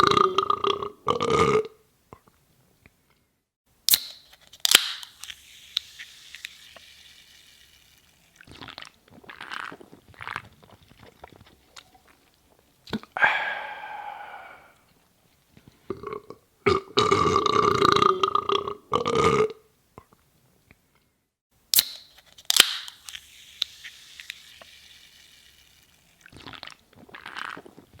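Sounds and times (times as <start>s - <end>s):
person burping: 0.0s - 1.8s, 13.2s - 14.8s, 15.9s - 19.6s
soda can tab cracking open: 3.9s - 9.6s, 21.7s - 26.8s
carbonation fizzing: 5.0s - 11.4s, 22.5s - 27.4s.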